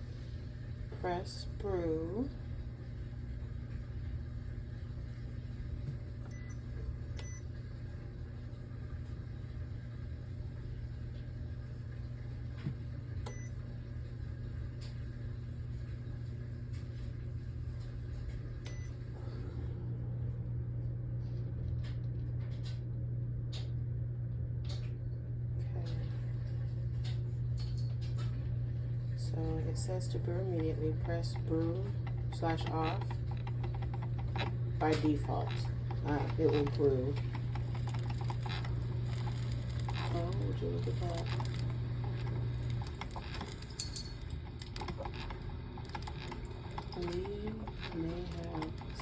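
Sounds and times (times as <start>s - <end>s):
coffeemaker humming: 0.0s - 49.0s
faint clicks and ticks: 30.6s - 49.0s.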